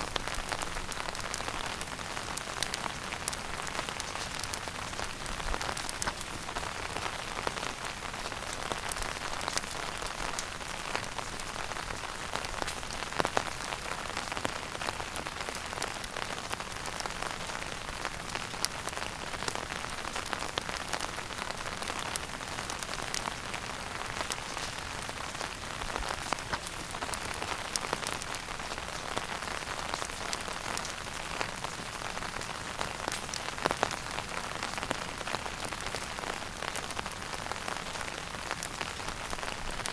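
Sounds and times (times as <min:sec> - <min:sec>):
wood fire crackling: 0:00.0 - 0:39.9
fire pops: 0:02.4 - 0:06.7, 0:24.2 - 0:28.2, 0:33.1 - 0:33.8.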